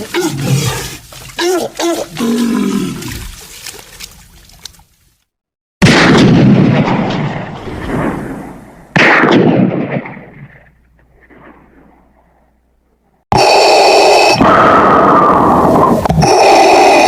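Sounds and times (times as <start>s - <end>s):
rumbling explosions: 5.8s - 12.5s.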